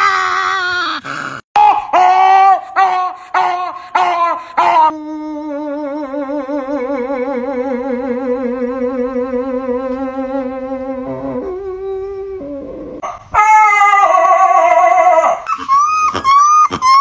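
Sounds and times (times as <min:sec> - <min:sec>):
dog howling: 0:11.1 - 0:17.0
dog yowling: 0:12.9 - 0:17.0.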